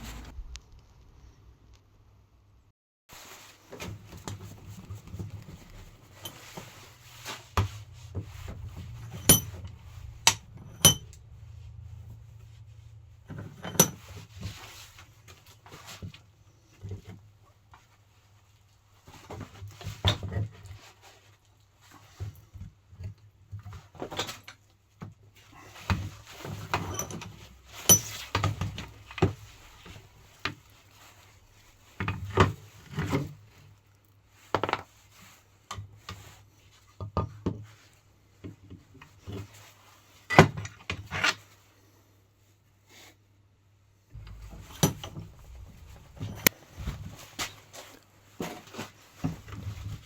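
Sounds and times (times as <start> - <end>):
tools and car parts clattering: 5.1 - 11.9, 12.6 - 14.9, 26.3 - 30.0, 44.2 - 50.0.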